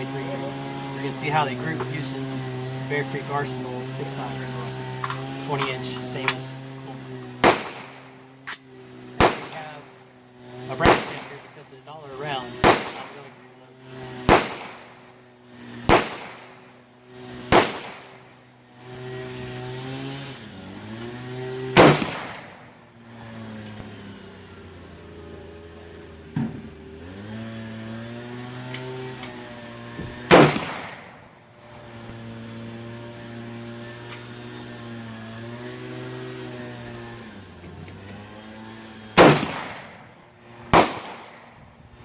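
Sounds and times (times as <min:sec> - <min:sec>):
steady motor-like hum: 0:00.0 - 0:42.0
rifle shots: 0:07.4 - 0:08.2, 0:09.2 - 0:09.9, 0:10.8 - 0:11.6, 0:12.6 - 0:13.3, 0:14.2 - 0:15.1, 0:15.8 - 0:16.8, 0:17.5 - 0:18.3, 0:21.7 - 0:22.8, 0:30.1 - 0:31.4, 0:39.2 - 0:41.5.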